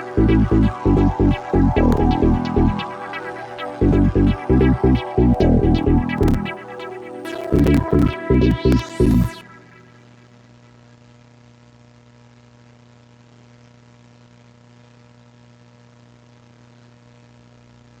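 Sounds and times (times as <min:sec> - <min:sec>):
electro house hit: 0:00.0 - 0:10.0
low electrical hum with hiss: 0:09.5 - 0:18.0.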